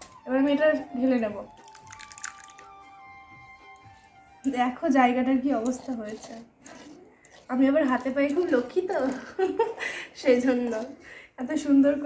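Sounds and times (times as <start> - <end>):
quiet background music: 0.0 - 12.0
juice splashing and dripping: 1.0 - 4.4.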